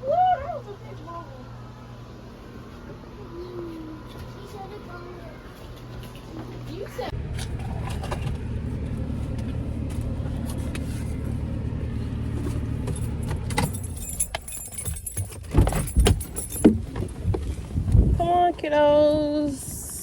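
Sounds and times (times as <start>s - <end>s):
car road rumble from inside: 6.4s - 20.0s.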